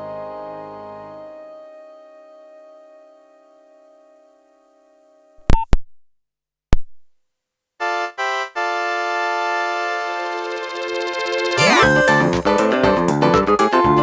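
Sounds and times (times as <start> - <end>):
synthesized phone ringtone: 10.2 - 14.0.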